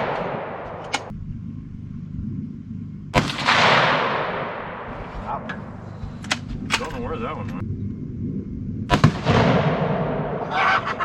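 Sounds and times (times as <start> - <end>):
rifle shot with echo: 0.0 - 1.1, 3.2 - 5.1, 8.9 - 10.4.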